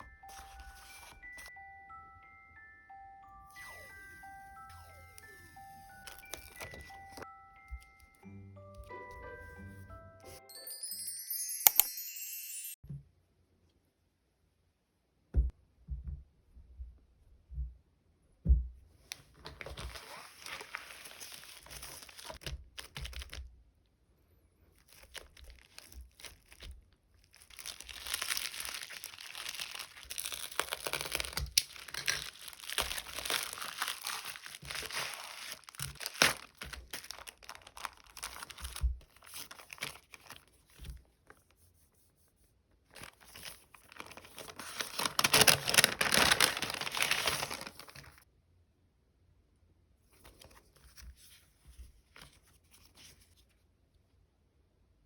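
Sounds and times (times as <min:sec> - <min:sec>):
plastic packaging crinkling: 0:00.0 - 0:01.5, 0:04.6 - 0:08.0, 0:19.5 - 0:23.5, 0:24.8 - 0:41.4, 0:42.9 - 0:48.2.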